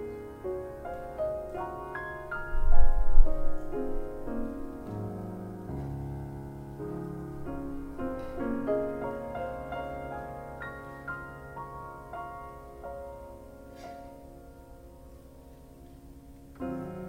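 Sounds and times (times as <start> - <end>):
slow piano notes: 0.0 - 17.0.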